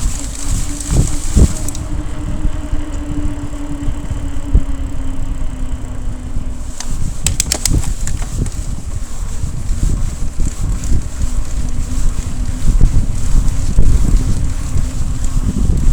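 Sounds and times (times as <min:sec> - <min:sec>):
vehicle engine hum: 0:00.0 - 0:15.9
wind buffeting microphone: 0:00.0 - 0:15.9
sharp clicks: 0:06.8 - 0:08.6.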